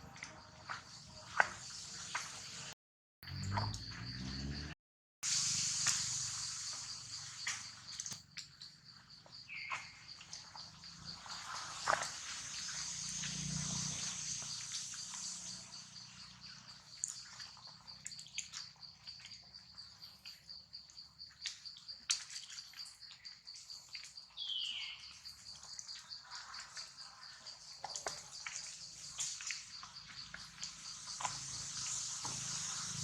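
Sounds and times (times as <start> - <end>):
pulsing high insect drone: 10.6 - 17.1, 29.5 - 33.0.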